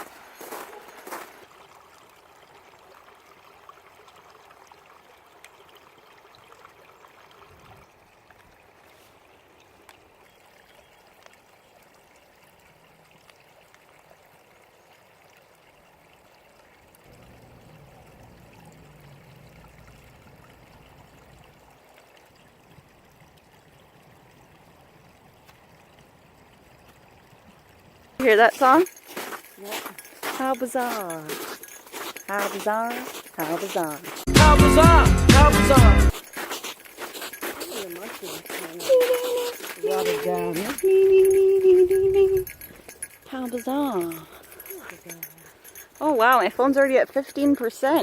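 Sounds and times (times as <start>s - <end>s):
small stream rushing: 0.0s - 48.0s.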